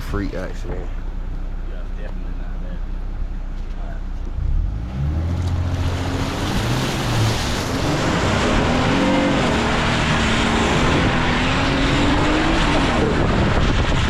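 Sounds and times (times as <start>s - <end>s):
truck engine revving hard: 4.4s - 14.0s
rush of water and mud spraying: 5.5s - 14.0s.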